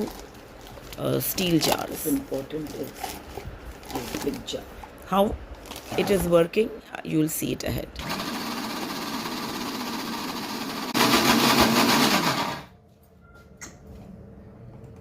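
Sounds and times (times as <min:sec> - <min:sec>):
mixer grinder motor running: 0:08.0 - 0:12.7.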